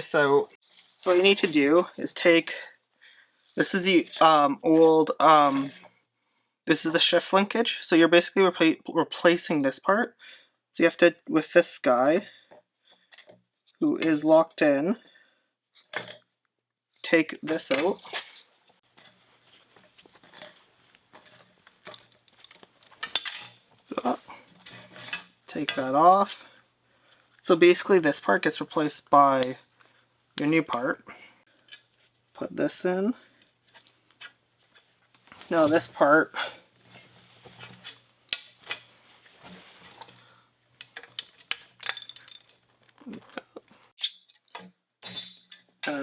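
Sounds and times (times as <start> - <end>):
small metal parts clicking: 40.8 - 43.0.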